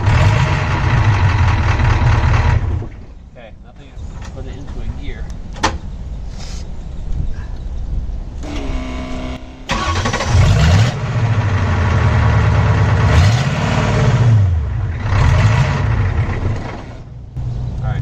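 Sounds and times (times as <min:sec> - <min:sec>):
diesel engine revving: 0:00.0 - 0:03.1, 0:08.4 - 0:18.0.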